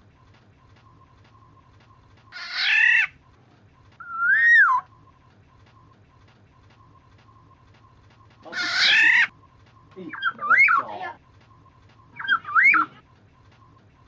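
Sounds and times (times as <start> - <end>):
faint steady hum: 0.0 - 14.0
bird rasping call: 2.3 - 3.2, 4.0 - 5.1, 8.4 - 13.8
bird fluty whistled phrases: 4.0 - 4.9, 8.4 - 11.0, 11.6 - 13.0.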